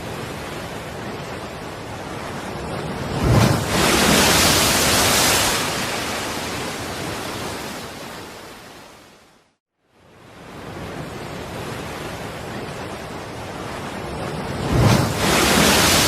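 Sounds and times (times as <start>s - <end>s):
surf washing: 0.0s - 9.0s, 10.4s - 16.0s
wave breaking: 2.0s - 8.1s, 13.5s - 16.0s.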